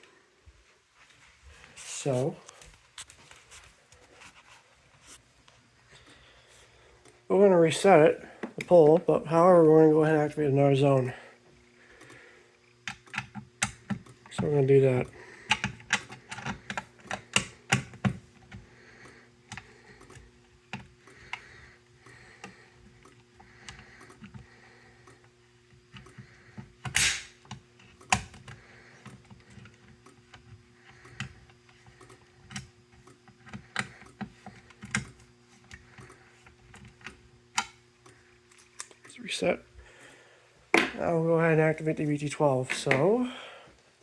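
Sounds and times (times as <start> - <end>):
faint steady hum: 0.0 - 44.0.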